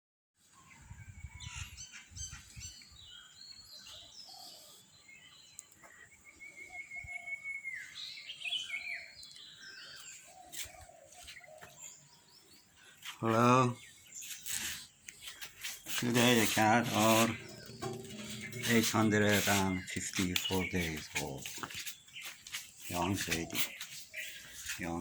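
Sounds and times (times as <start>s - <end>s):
birds chirping and calling: 0.7s - 25.0s
low rumbling: 16.6s - 19.8s.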